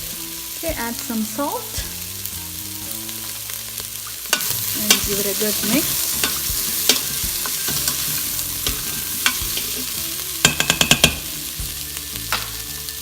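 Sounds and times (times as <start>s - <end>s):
food sizzling in a pot: 0.0s - 13.0s
utensil scraping and knocking pot: 4.3s - 11.7s.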